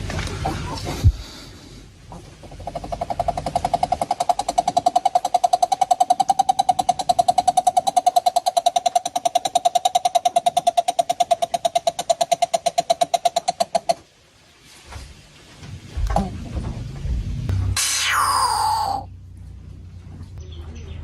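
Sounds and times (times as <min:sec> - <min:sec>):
coucal hooting: 0:02.8 - 0:13.9, 0:17.8 - 0:19.1.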